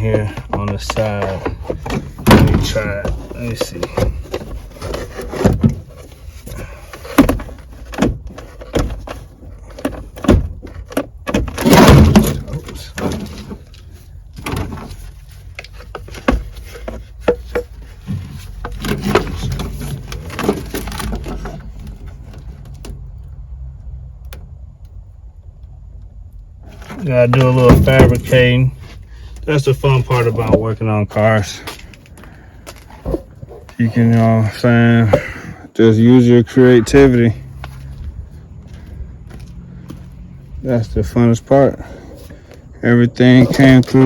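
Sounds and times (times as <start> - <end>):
knocks and clatter of handled part: 0.0 - 6.1, 6.9 - 13.8, 14.4 - 23.0
clattering scrape: 0.0 - 10.2, 11.5 - 22.7.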